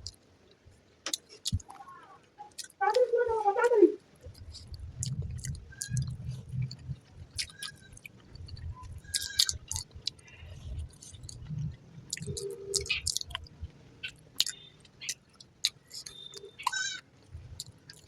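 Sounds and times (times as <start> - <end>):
chewing food: 0.0 - 3.0, 4.0 - 18.0
wet mouth smacks and clicks: 12.1 - 13.5, 14.4 - 16.8.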